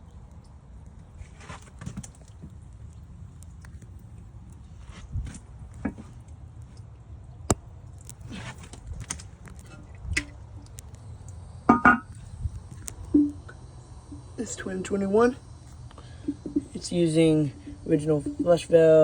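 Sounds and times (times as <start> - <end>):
low steady hum: 0.0 - 19.0
loud ringing knocks: 11.7 - 12.1.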